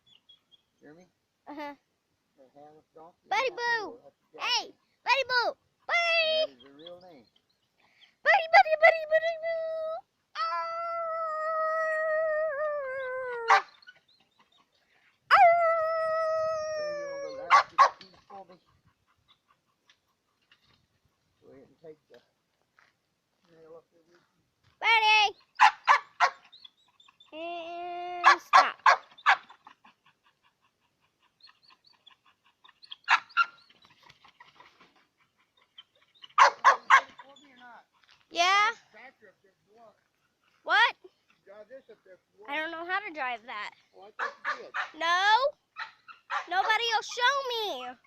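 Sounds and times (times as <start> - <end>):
high-pitched vocal noises: 8.2 - 13.6
dog yelping: 8.3 - 14.7, 15.3 - 19.9, 25.3 - 27.4, 28.1 - 38.2, 44.2 - 48.0
dog howling: 10.4 - 13.7, 15.3 - 17.8
dog barking: 13.5 - 13.8, 17.4 - 18.1, 25.6 - 26.5, 28.2 - 29.6, 33.0 - 33.6, 36.3 - 37.3, 44.2 - 45.0, 45.8 - 46.8.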